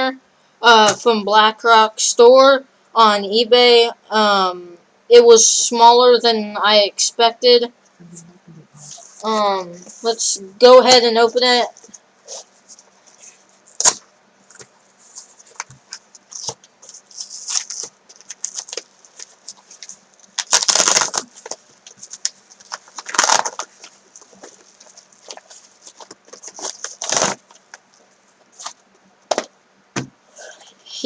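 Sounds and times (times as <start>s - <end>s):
packaging crinkling and rustling: 11.8s - 29.5s
packaging ripping: 13.7s - 14.0s, 15.4s - 28.0s.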